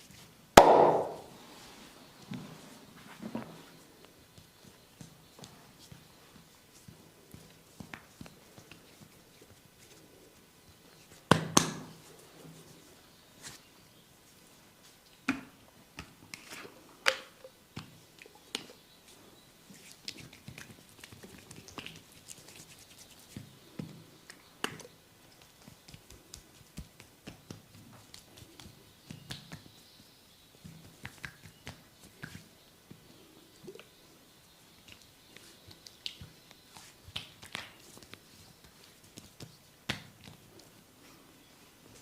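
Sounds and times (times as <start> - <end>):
soft rubbing of skin: 1.4 - 11.3, 11.9 - 15.0, 18.0 - 29.8, 30.6 - 42.0
clicks and taps on skin and hair: 19.8 - 29.7, 30.6 - 32.5, 34.8 - 40.7.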